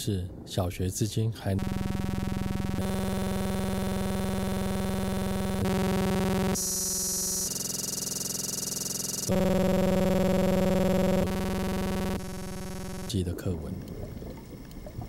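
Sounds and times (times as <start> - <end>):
synthesizer chords: 1.6 - 13.1.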